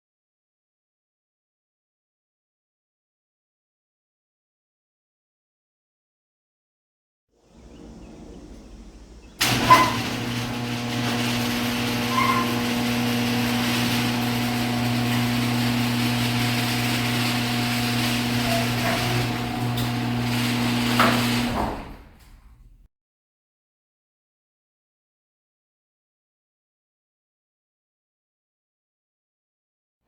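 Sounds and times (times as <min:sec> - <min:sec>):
garage door clunk: 0:07.4 - 0:22.8
garage door motor hum: 0:07.4 - 0:22.8
garage door opener click: 0:07.5 - 0:22.8.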